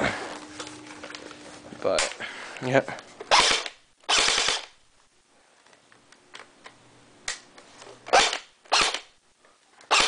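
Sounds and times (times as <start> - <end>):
airsoft gun firing bursts: 3.3 - 4.7.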